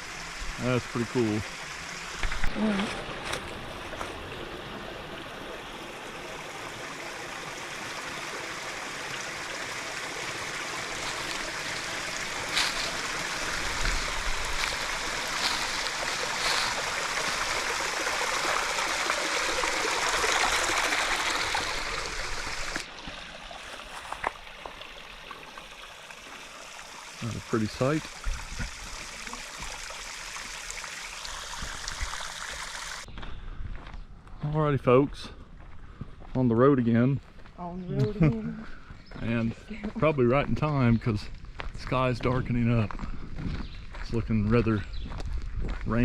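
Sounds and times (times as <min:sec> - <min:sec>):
creek water rushing over rock: 0:00.0 - 0:33.1.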